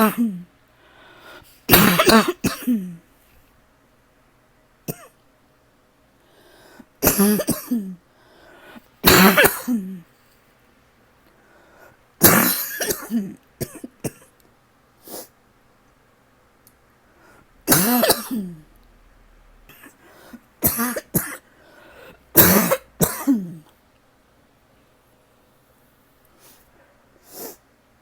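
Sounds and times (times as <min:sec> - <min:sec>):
person coughing: 0:00.0 - 0:00.5, 0:01.7 - 0:03.0, 0:04.9 - 0:05.2, 0:07.0 - 0:08.0, 0:09.0 - 0:10.1, 0:12.2 - 0:14.3, 0:17.7 - 0:18.7, 0:20.6 - 0:23.7.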